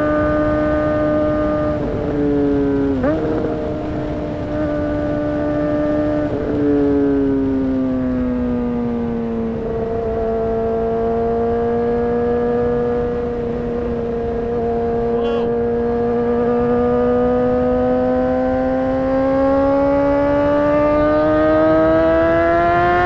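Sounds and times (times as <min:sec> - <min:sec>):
motorcycle engine running: 0:00.0 - 0:08.3.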